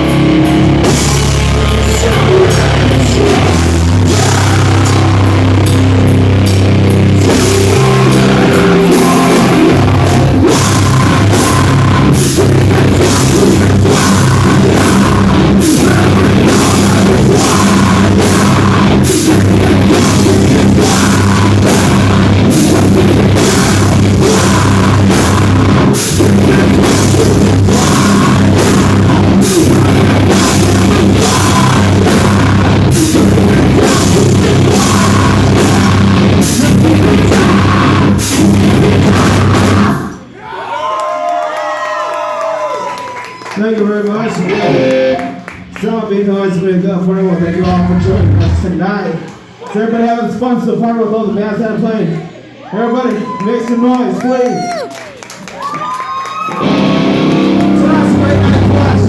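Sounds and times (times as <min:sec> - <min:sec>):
live metal band playing: 0:00.0 - 0:40.3, 0:44.1 - 0:45.5, 0:47.6 - 0:48.9, 0:56.5 - 0:59.0.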